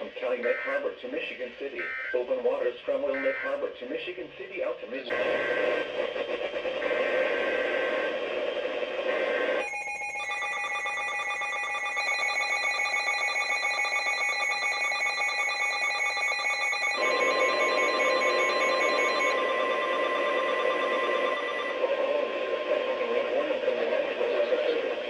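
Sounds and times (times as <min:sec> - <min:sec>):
steady many-toned alert tone: 0:09.6 - 0:22.1.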